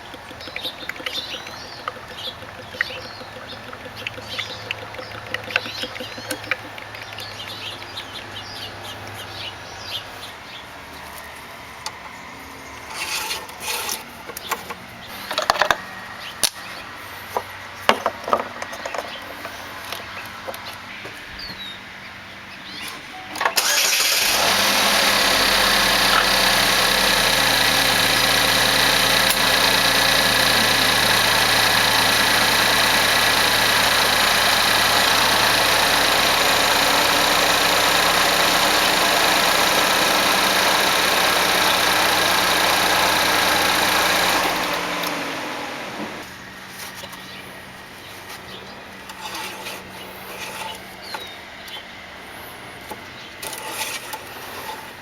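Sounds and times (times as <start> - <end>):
car engine starting and idling: 0.0 - 10.6, 23.4 - 47.8.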